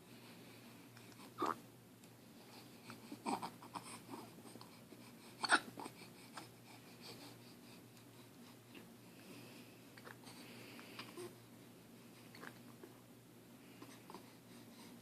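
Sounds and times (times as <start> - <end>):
baby hiccuping: 1.4 - 1.6, 5.4 - 5.7
soft baby breathing: 2.4 - 13.0, 13.6 - 15.0.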